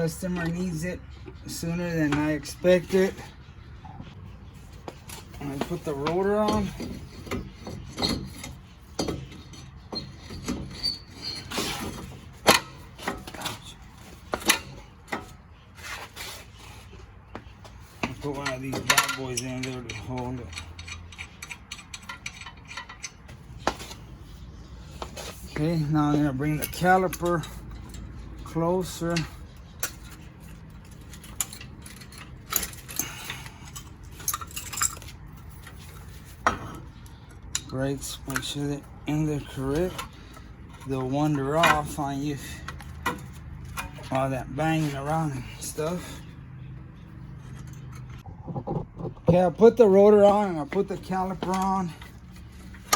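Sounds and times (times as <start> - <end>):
metal clinks and knocks: 18.0 - 24.2, 25.0 - 38.8, 46.5 - 49.3.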